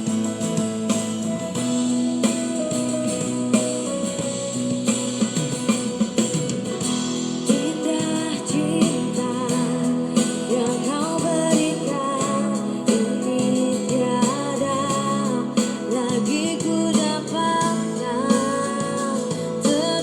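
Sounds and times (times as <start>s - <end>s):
guitar-led band accompaniment: 0.0s - 20.0s
woman singing: 7.4s - 20.0s.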